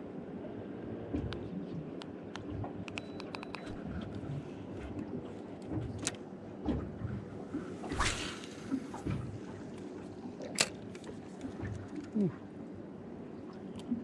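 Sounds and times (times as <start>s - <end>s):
water lapping against boat hull: 0.1s - 14.0s
splashy rush of water: 7.7s - 9.5s.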